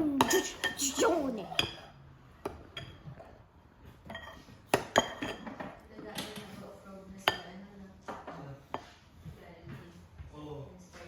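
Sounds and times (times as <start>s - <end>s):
metal utensils clinking on dishes: 4.0s - 6.6s.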